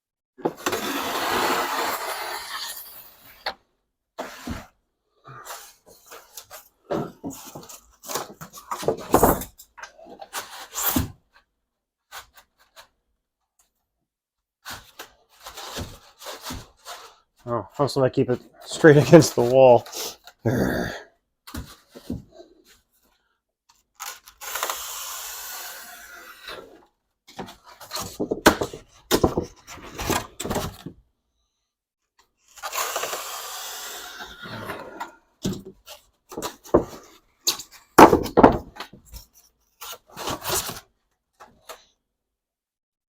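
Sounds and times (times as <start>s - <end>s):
scraping of plywood and foam board: 0.4s - 3.6s, 4.2s - 4.8s, 14.6s - 17.4s, 24.0s - 30.9s, 32.5s - 41.6s.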